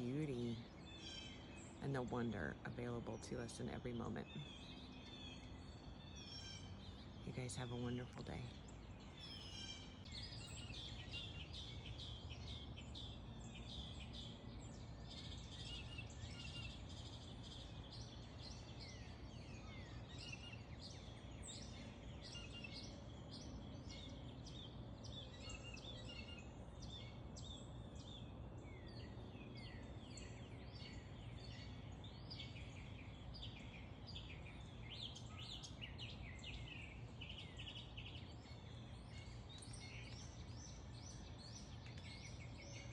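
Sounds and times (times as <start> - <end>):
small birds chirping: 0.0 - 42.9.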